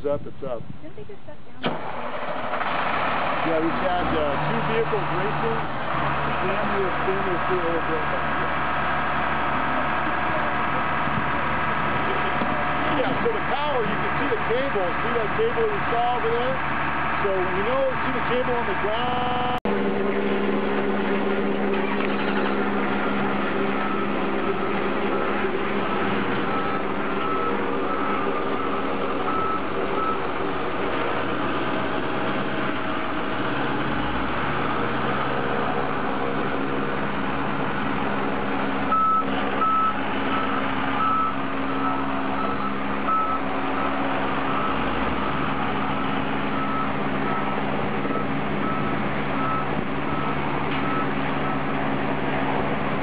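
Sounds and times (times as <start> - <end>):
heavy engine running: 0.0 - 53.0
reversing alarm beeping: 21.8 - 30.4, 38.9 - 45.5, 46.5 - 51.8.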